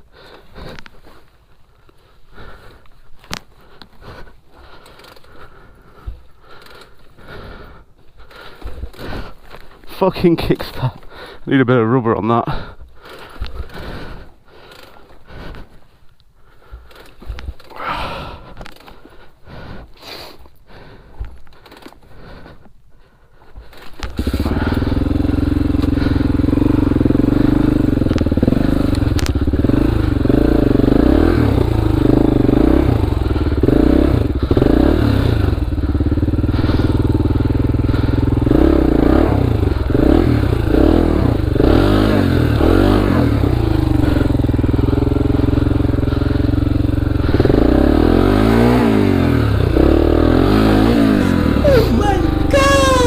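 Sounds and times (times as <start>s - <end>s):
motorcycle engine starting and revving: 23.8s - 53.0s.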